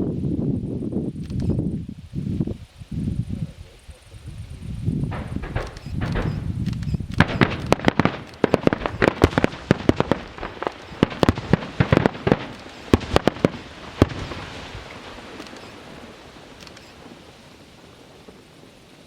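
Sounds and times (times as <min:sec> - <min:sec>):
fireworks bangs and crackles: 0:04.2 - 0:19.0.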